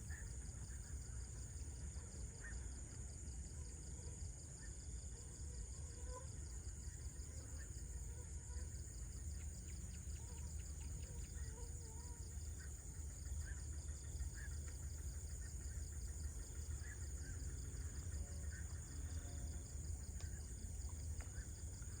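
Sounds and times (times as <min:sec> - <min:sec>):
insect chorus trilling: 0:06.2 - 0:22.0.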